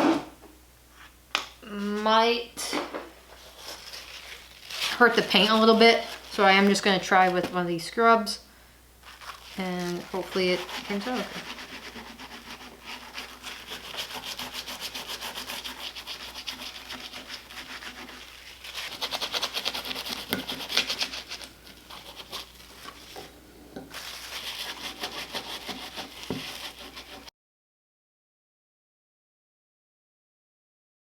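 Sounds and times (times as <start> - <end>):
scrub pad rubbing metal: 3.4 - 7.6, 9.0 - 27.3.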